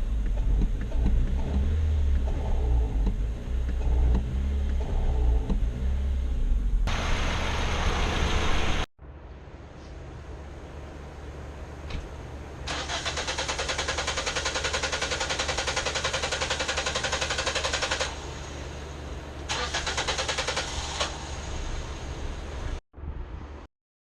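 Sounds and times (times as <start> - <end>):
car engine cranking on starter: 0.0 - 8.9, 12.6 - 18.4, 19.4 - 21.8.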